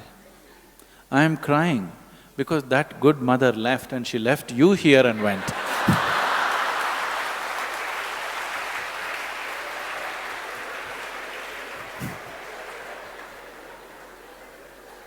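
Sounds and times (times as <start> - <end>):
audience applause: 5.2 - 15.0.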